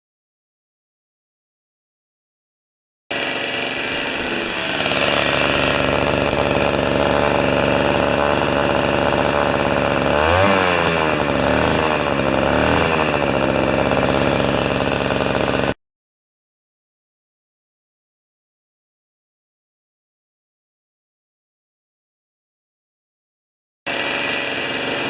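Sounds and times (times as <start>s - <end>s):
two-stroke engine running: 3.1s - 15.8s, 23.9s - 25.0s.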